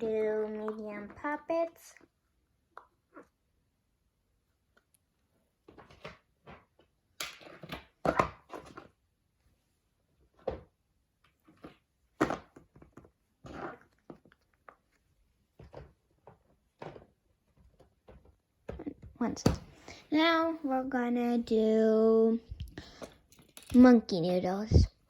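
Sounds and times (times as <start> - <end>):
toys knocking and clattering: 22.9 - 24.0.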